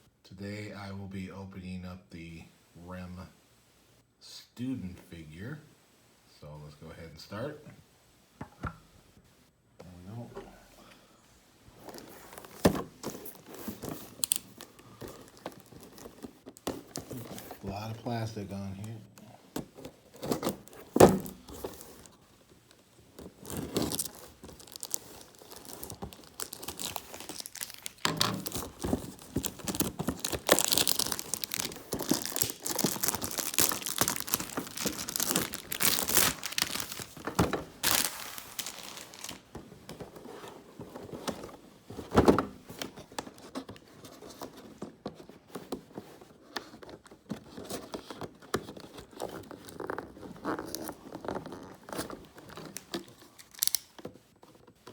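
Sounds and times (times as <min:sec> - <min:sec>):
plastic packaging crinkling and tearing: 0:11.8 - 0:19.0, 0:20.1 - 0:39.6, 0:46.9 - 0:54.0.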